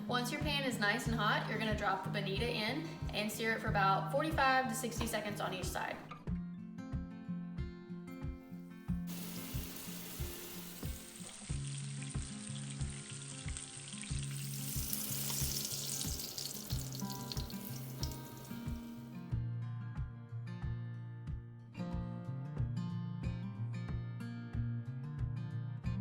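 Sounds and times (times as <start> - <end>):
fish sizzling in a pan: 9.1 - 19.0.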